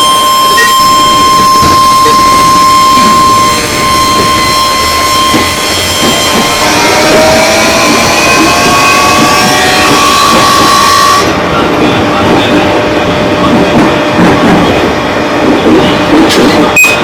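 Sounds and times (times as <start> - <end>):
electric train motor whine: 0.0 - 11.3
rail rumble: 0.0 - 17.0.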